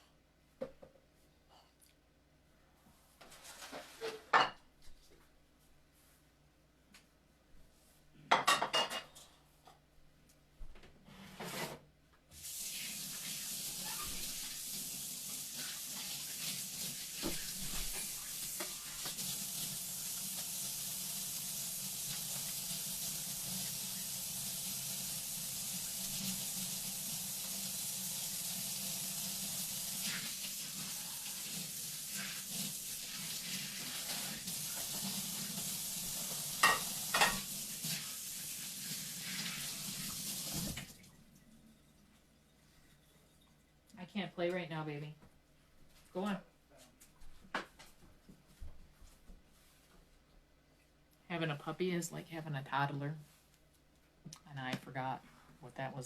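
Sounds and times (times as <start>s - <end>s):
tap water running into sink: 12.4s - 41.4s.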